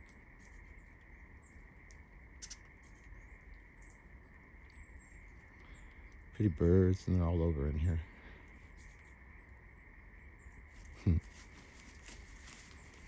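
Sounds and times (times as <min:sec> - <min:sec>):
crickets chirring: 0:00.0 - 0:13.0
small birds chirping: 0:00.0 - 0:13.0.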